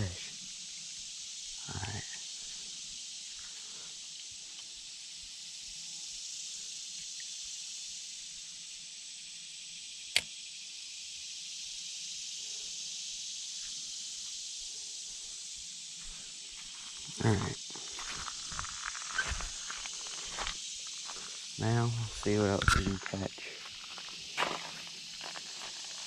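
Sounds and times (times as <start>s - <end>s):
creekside outdoor hiss: 0.0s - 26.0s
sharp click: 10.1s - 10.3s.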